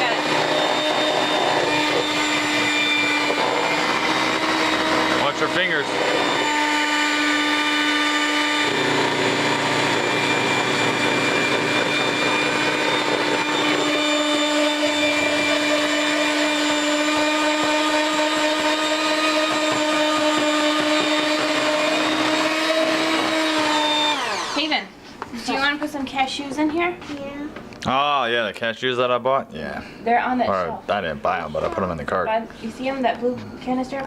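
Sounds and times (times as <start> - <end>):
electric kitchen mixer whine: 0.0 - 25.6.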